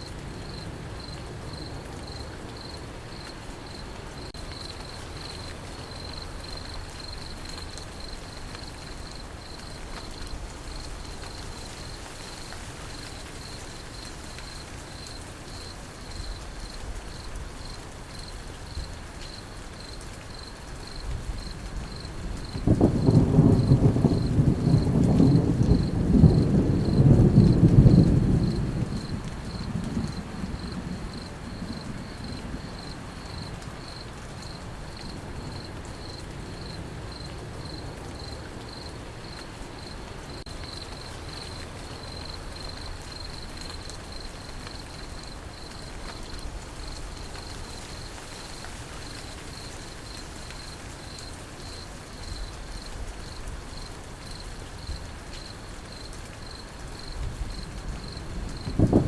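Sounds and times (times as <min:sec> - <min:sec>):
crickets chirping: 0:00.0 - 0:59.0
light rain hissing: 0:00.0 - 0:59.0
low thunder rumble: 0:21.1 - 0:35.6, 0:57.0 - 0:59.0.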